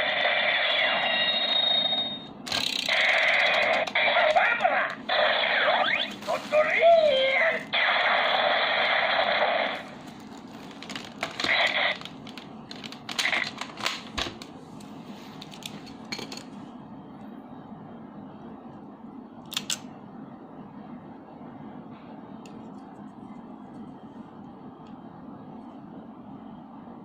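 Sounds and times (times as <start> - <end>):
plastic toy clicks and rattles: 2.5 - 4.0.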